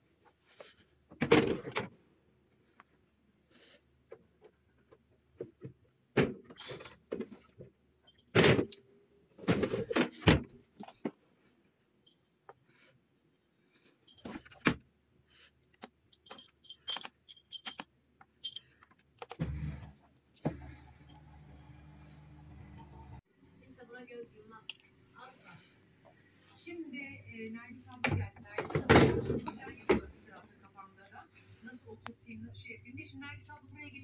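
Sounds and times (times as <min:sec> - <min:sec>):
household objects clattering: 0:28.0 - 0:30.4.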